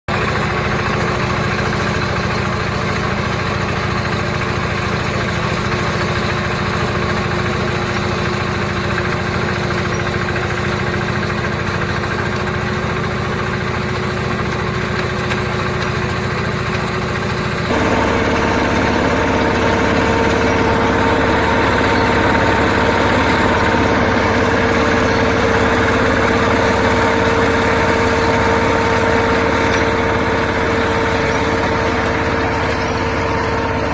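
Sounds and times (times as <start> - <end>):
harvester engine drone: 0.1 - 33.9
machine whine: 17.7 - 33.9.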